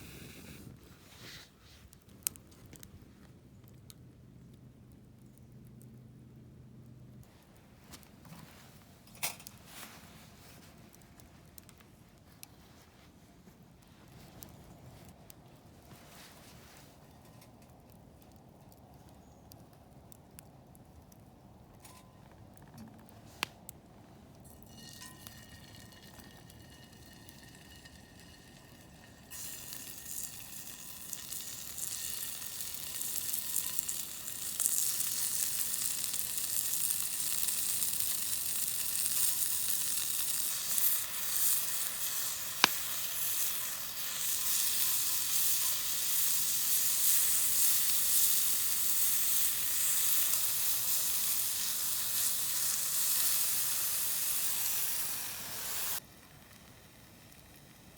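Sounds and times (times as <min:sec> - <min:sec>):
sizzling and hissing: 0:00.0 - 0:01.8, 0:27.1 - 0:57.9.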